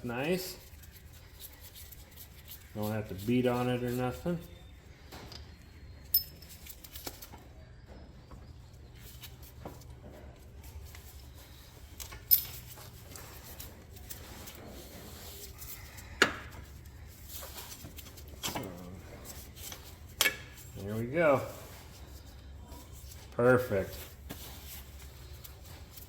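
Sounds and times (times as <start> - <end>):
metallic clinks of hand tools: 6.0 - 7.0.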